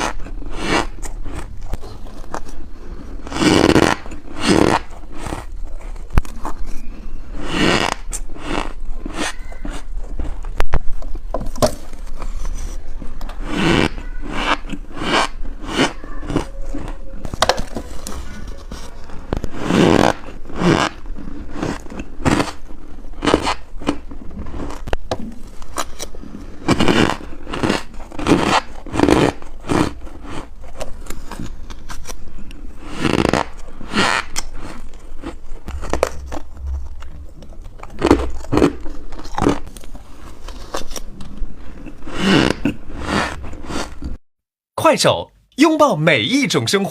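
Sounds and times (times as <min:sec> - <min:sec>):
crunching frost being chewed: 0:00.0 - 0:44.2.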